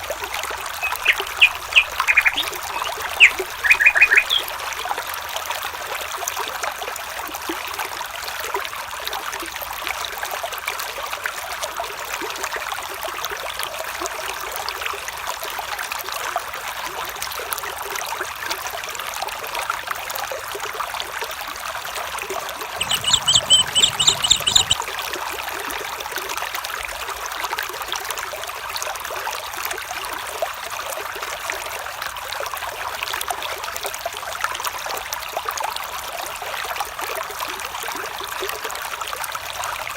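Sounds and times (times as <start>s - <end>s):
stream trickling and babbling: 0.0s - 39.9s
rapid high chirps: 0.7s - 4.5s, 22.8s - 24.8s.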